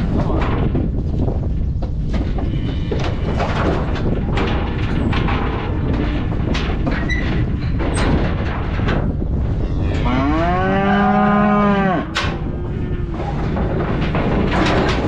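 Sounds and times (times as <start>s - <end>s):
cow mooing: 9.6s - 13.2s.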